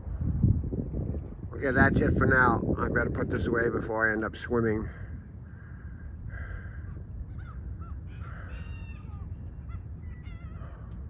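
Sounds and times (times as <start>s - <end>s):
gulls calling: 5.5s - 11.0s.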